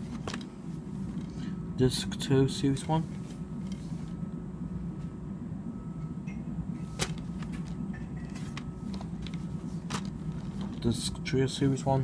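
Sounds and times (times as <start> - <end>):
plastic case handling: 0.0 - 0.5, 6.9 - 10.9
low room hum: 0.0 - 12.0.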